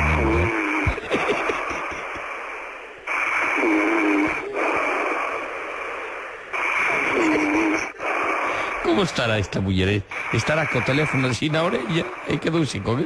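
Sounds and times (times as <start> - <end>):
woman snoring over phone: 0.0 - 0.7
phone line hiss: 0.0 - 1.6.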